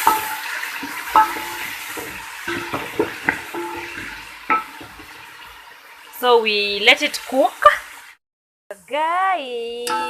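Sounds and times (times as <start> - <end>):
spoon clinking against pot: 0.0 - 5.2
vegetables sizzling in hot oil: 0.0 - 8.2.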